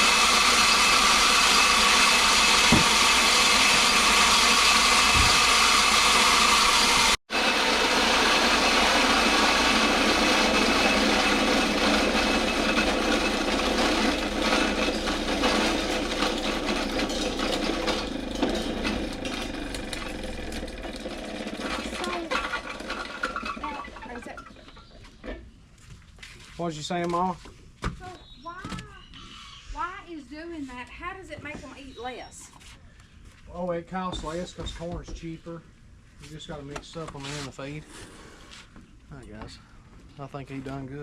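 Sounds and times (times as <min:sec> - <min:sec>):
feed grinder cracking corn: 0:00.0 - 0:24.8.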